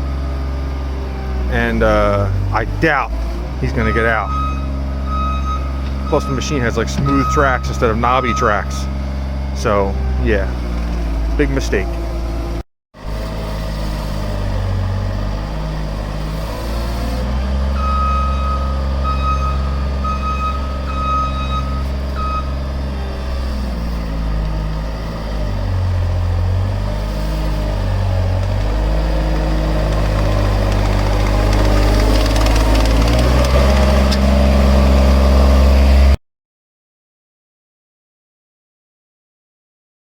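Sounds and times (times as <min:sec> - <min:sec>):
diesel engine under load: 0:00.0 - 0:36.2
reversing alarm beeping: 0:03.7 - 0:09.0, 0:17.7 - 0:23.5.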